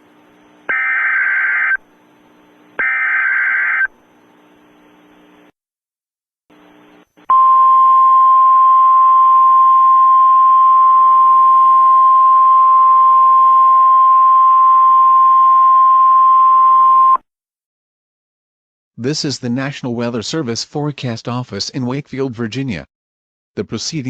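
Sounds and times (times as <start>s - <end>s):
long steady alarm tone: 0.7s - 1.8s, 2.8s - 3.9s.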